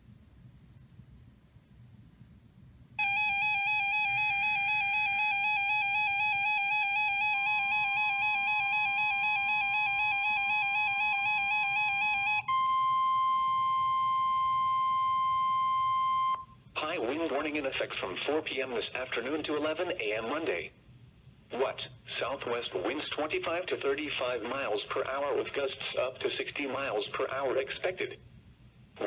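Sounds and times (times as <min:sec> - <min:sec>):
steady alarm tone: 0:03.0 - 0:16.6.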